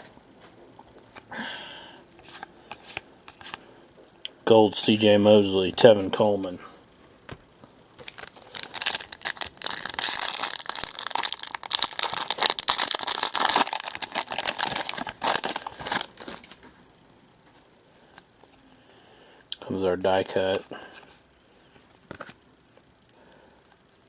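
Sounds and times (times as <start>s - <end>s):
foil wrapper tearing and crinkling: 8.0s - 16.6s.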